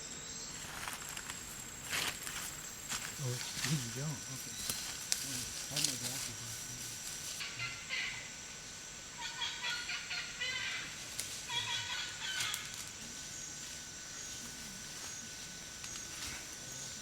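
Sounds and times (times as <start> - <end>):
bird calls: 9.2 - 12.7.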